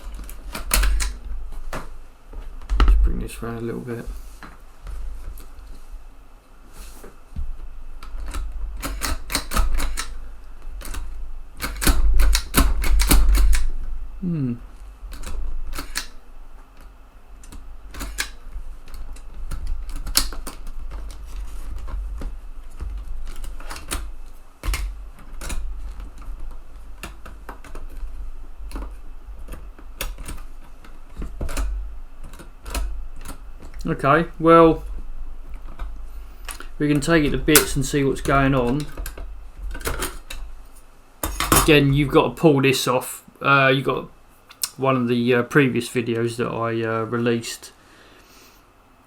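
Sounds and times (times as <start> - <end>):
floppy drive eject mechanism clicking: 0.0 - 1.2, 8.0 - 13.8, 15.1 - 16.2, 17.4 - 21.2
low handling thumps: 2.4 - 4.2.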